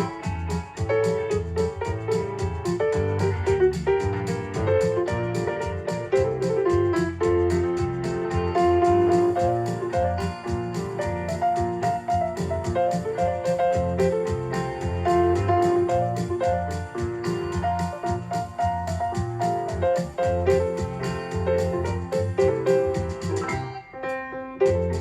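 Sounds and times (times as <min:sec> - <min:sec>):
quick ticking beat: 0:00.0 - 0:23.5
bass line: 0:00.0 - 0:23.8.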